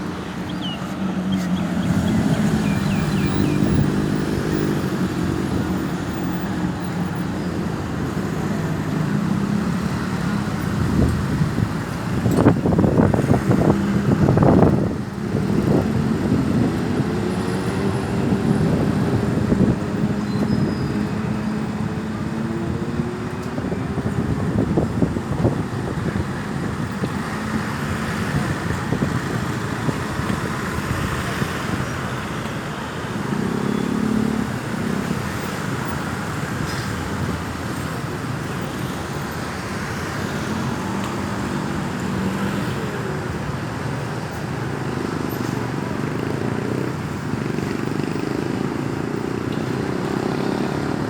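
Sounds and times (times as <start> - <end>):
tyre and road noise: 0.0 - 51.0
vehicles passing: 0.0 - 51.0.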